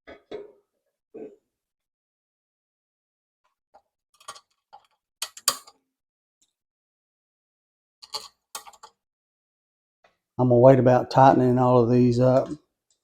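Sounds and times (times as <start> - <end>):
metal bolts clicking and clinking: 4.2 - 5.8, 8.0 - 9.0.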